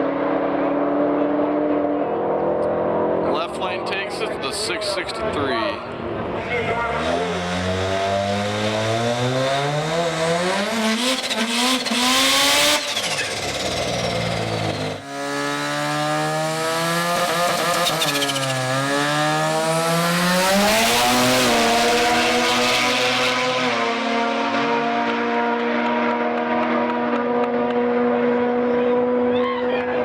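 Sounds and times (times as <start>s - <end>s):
race car engines revving: 0.0s - 30.0s.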